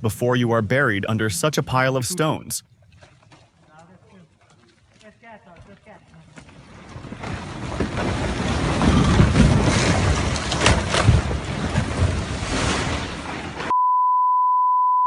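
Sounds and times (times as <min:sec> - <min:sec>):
steady beep tone: 0:13.7 - 0:15.0.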